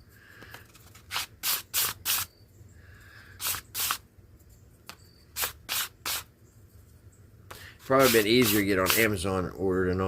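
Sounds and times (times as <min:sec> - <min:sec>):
sandpaper rubbing on wood: 0:01.1 - 0:02.3, 0:03.4 - 0:04.0, 0:05.4 - 0:06.3, 0:07.8 - 0:09.2.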